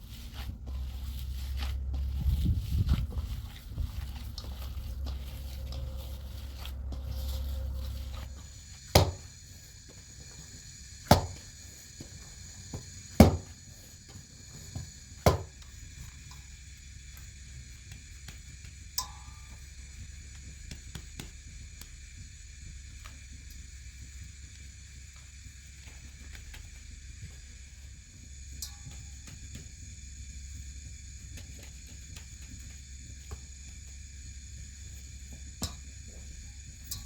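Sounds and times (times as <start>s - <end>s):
low rumble: 0.0s - 10.6s
steady high-pitched hum: 0.0s - 37.0s.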